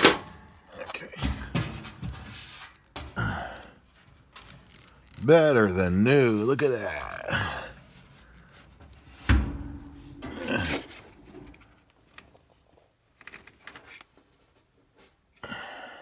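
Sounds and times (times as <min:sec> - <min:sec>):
dryer door thumping shut: 0:00.0 - 0:00.4, 0:01.2 - 0:02.4, 0:09.1 - 0:11.6.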